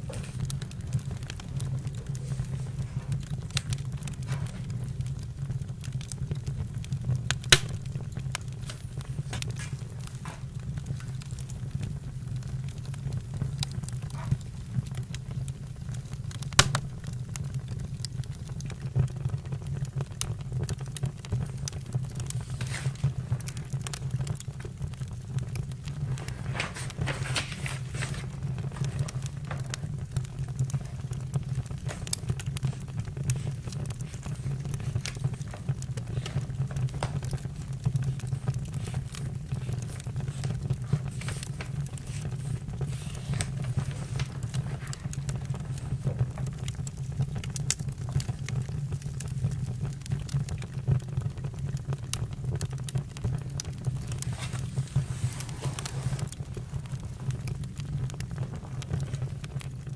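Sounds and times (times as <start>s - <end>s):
fire hissing flare: 0.0s - 18.8s, 20.4s - 48.2s, 53.5s - 59.7s
campfire crackling and popping: 0.0s - 59.9s
low fire rumble: 0.0s - 59.9s.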